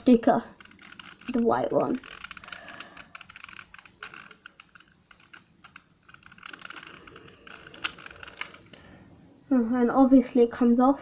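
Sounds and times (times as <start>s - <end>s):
fingernail scratching plastic sticker: 0.4s - 8.8s.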